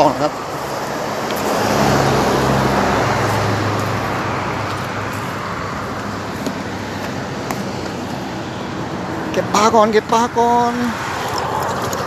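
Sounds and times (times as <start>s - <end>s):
vehicle passing: 0.0s - 12.0s
tyre noise: 0.6s - 9.6s.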